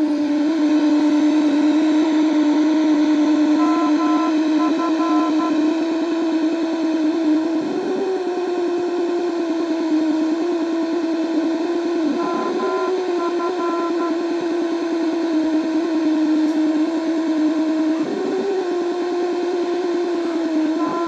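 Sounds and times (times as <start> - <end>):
buzzing radio drone: 0.0 - 21.0.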